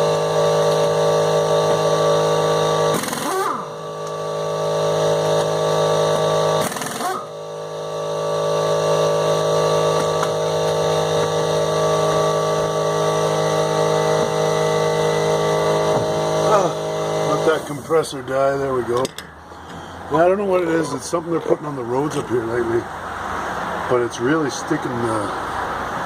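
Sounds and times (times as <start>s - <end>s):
air compressor motor running: 0.0s - 18.1s.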